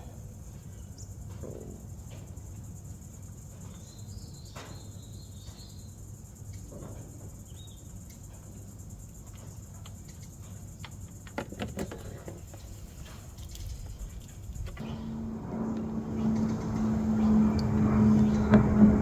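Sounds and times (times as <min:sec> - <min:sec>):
faint low hum: 0:12.4 - 0:19.0.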